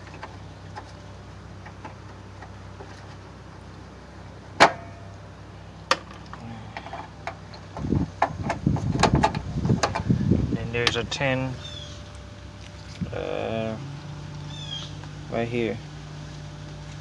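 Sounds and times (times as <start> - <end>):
light clicks of car parts: 0.0 - 3.3, 5.8 - 10.1
rattling and handling of parts: 0.0 - 3.6, 5.8 - 11.4
steady low hum: 0.0 - 17.0.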